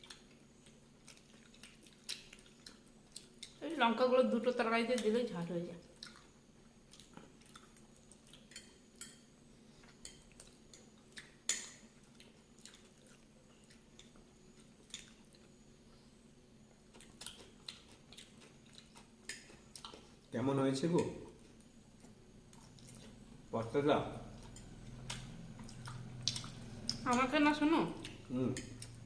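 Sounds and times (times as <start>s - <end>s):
person chewing pasta: 0.0s - 3.6s, 5.9s - 20.3s, 21.4s - 23.3s, 24.3s - 27.1s, 28.0s - 29.0s
wet mouth clicks: 25.0s - 27.1s.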